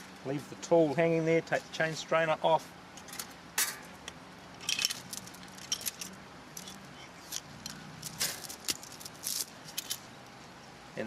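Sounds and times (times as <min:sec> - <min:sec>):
metal chain clinking: 0:04.6 - 0:10.1.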